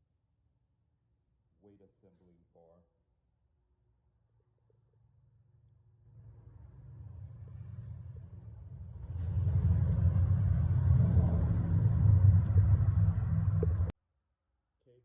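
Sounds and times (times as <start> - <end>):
low rumbling noise: 6.1 - 13.9.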